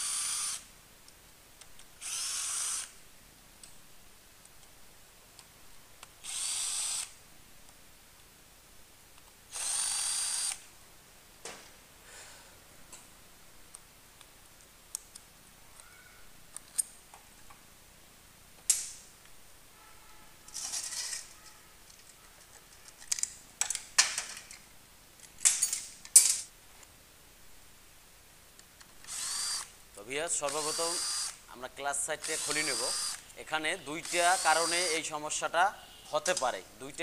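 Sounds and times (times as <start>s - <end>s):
metal tools clinking: 25.4s - 26.5s.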